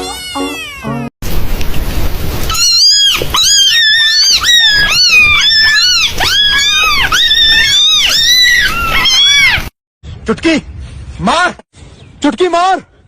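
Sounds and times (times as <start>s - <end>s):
young animal squealing: 2.5s - 9.7s.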